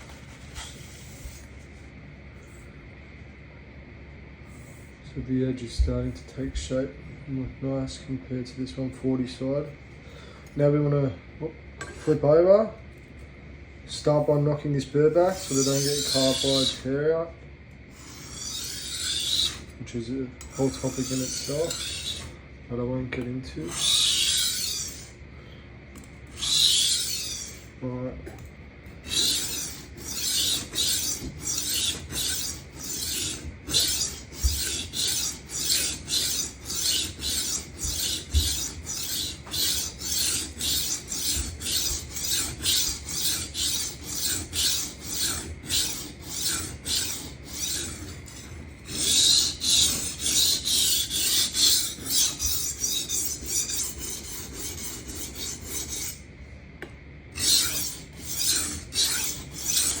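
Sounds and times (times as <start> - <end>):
knife scraping on sharpening plate: 29.0 - 56.2, 57.4 - 60.0.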